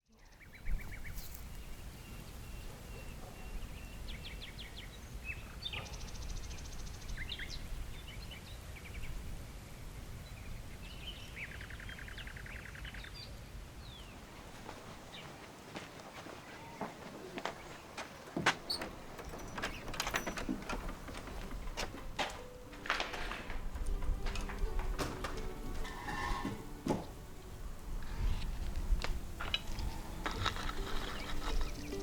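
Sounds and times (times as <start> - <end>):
songbirds chirping and trilling: 0.0 - 32.0.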